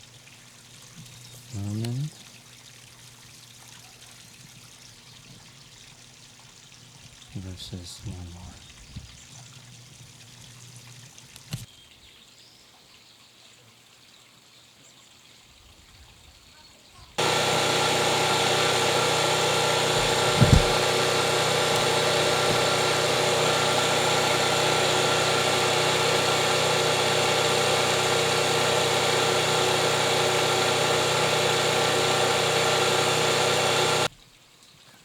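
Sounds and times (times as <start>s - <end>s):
generator engine humming: 17.2s - 34.1s
low bump: 19.8s - 22.7s.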